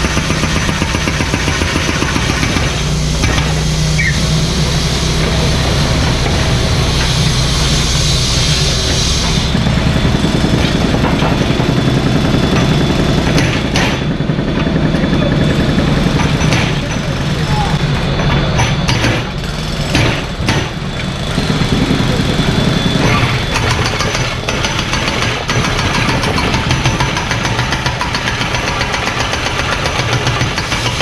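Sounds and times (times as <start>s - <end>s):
diesel engine running: 0.0s - 31.0s
hiss: 6.9s - 9.5s, 30.5s - 31.0s.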